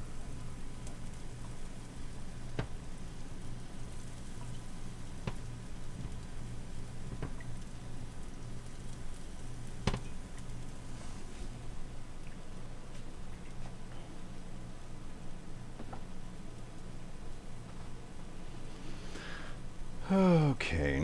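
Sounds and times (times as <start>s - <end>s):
pancake sizzling in a pan: 0.0s - 13.4s.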